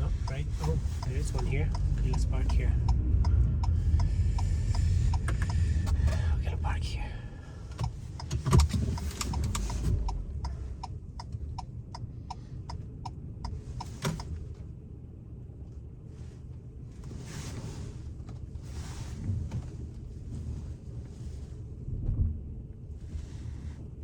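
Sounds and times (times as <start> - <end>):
turn signal clicker ticking: 0.0 - 14.5
low engine rumble: 0.0 - 24.0.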